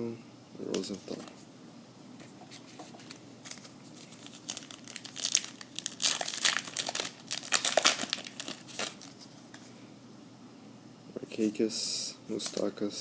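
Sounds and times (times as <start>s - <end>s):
plastic wrapper crinkling and tearing: 3.0s - 9.3s.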